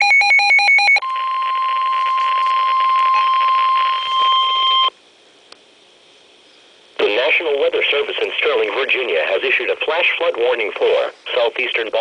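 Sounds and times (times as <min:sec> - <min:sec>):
steady warning alarm tone: 0:00.0 - 0:04.9
radio static: 0:01.2 - 0:04.9, 0:07.0 - 0:12.0.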